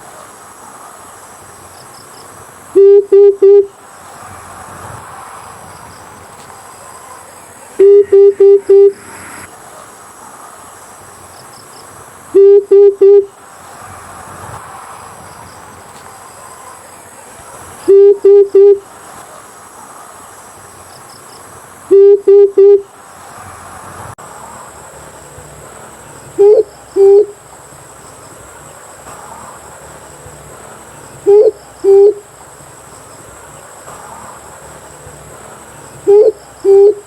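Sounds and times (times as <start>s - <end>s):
high insect drone: 0.0s - 37.0s
dove hooting: 2.8s - 3.8s, 7.8s - 9.2s, 12.4s - 13.4s, 17.9s - 18.9s, 21.9s - 22.9s, 26.3s - 27.5s, 31.2s - 32.4s, 36.0s - 37.0s.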